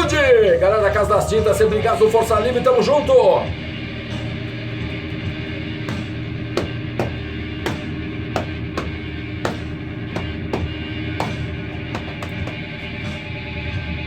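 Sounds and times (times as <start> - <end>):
drum hits: 5.9 - 12.9.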